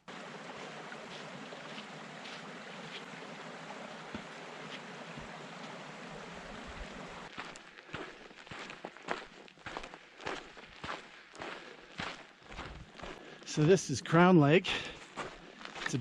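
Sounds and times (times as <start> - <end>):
stream water rushing: 0.0 - 7.4.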